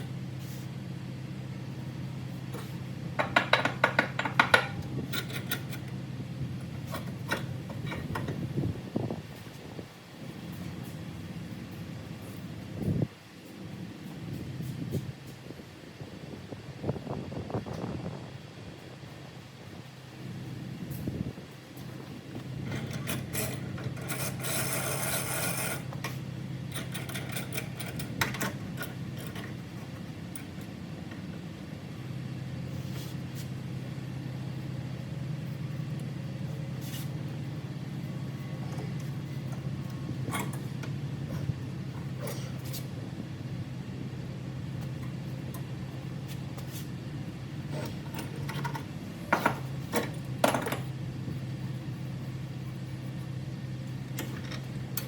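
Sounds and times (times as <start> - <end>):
steady low hum: 0.0 - 55.0
tools knocking on metal: 3.2 - 4.8
scraping on metal: 22.7 - 26.2.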